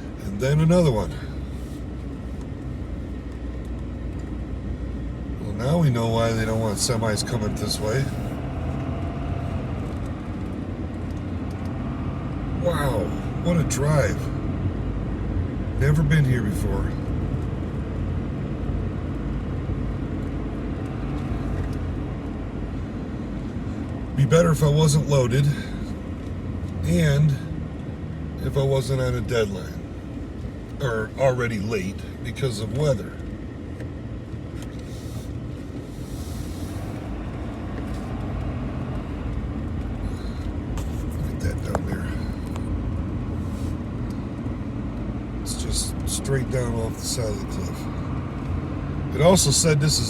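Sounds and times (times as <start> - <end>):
road noise: 0.0 - 50.0
truck diesel engine running: 0.0 - 50.0.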